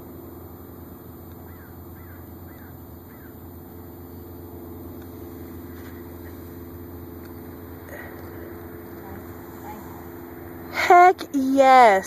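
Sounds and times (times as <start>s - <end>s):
model airplane propeller droning: 0.0s - 12.0s.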